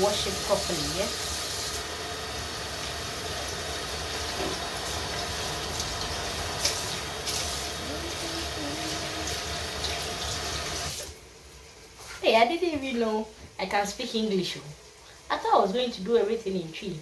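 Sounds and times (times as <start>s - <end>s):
tap running into sink: 3.4s - 7.8s.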